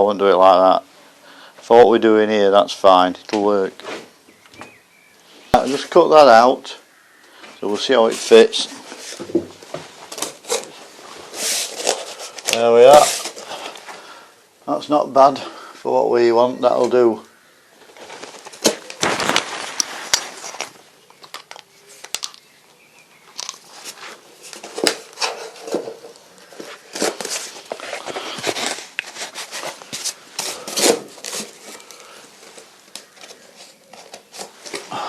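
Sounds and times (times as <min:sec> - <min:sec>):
cardboard rustling and scraping: 0:07.8 - 0:14.0, 0:17.8 - 0:20.8, 0:23.6 - 0:35.0.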